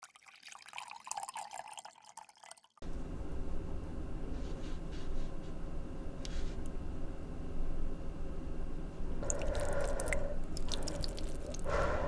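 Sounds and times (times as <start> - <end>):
steady low hum: 2.8 - 12.0.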